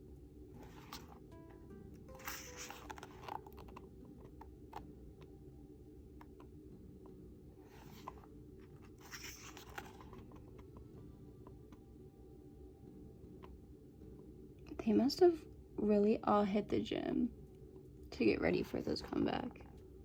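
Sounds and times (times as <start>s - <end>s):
paper pages rustling: 0.6s - 1.2s, 2.1s - 3.8s, 8.8s - 10.6s.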